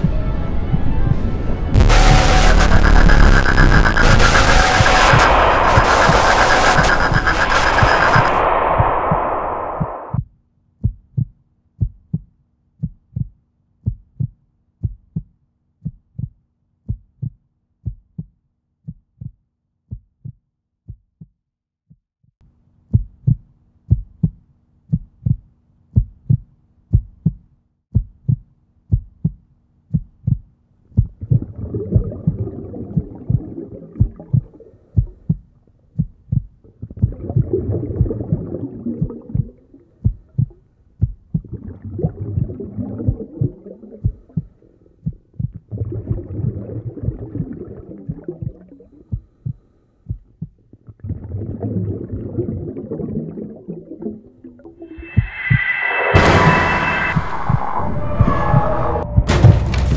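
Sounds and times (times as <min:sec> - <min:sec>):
heartbeat-like low thumps: 0:00.0 - 0:21.3, 0:22.9 - 0:47.5, 0:48.1 - 0:50.6, 0:54.8 - 0:59.6
faint hum: 0:01.8 - 0:10.1
rushing noise: 0:01.8 - 0:10.1, 0:54.9 - 0:59.8.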